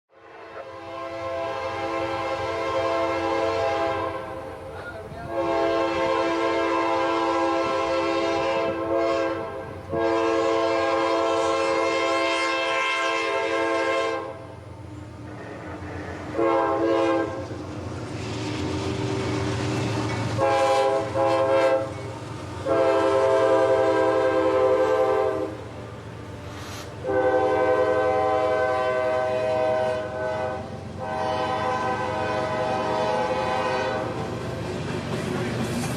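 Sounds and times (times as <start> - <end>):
rumble of passing train: 0.1 - 35.9
locomotive air horn blasts: 0.2 - 4.6, 5.2 - 14.4, 16.3 - 17.4, 20.4 - 22.0, 22.6 - 25.6, 26.5 - 34.2.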